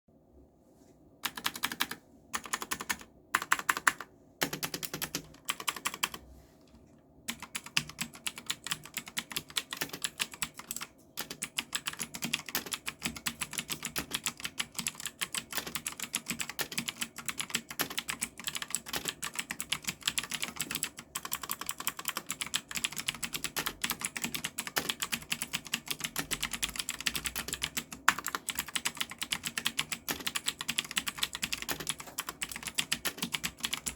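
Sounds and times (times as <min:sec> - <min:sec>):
clicky mechanical keyboard typing: 0:01.2 - 0:06.2, 0:07.3 - 0:33.9.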